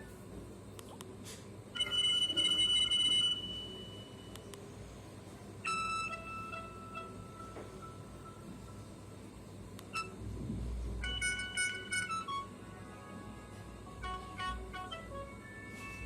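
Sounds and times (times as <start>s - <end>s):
phone electronic alert tones: 1.8s - 4.3s, 11.0s - 12.5s.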